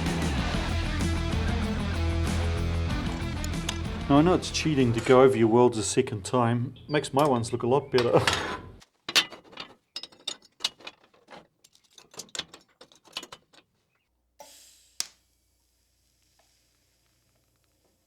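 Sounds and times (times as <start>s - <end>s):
short hiss ending in click: 14.4s - 15.3s.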